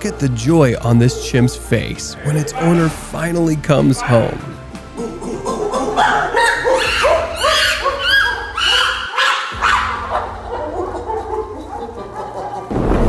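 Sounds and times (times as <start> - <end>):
chimpanzee squealing calls: 0.7 - 12.7.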